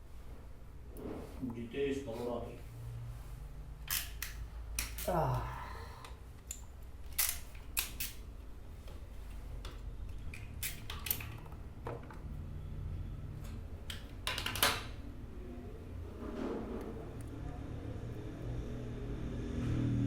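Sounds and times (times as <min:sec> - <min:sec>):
hand cutter snipping cable: 0:03.9 - 0:05.2
steady low hum: 0:14.9 - 0:20.0.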